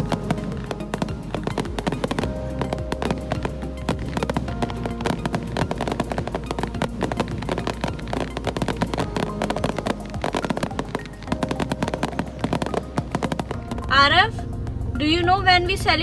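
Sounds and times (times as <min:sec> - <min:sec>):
fireworks crackling and banging: 0:00.0 - 0:14.0
background music with held notes: 0:00.0 - 0:16.0
low drone: 0:00.0 - 0:16.0.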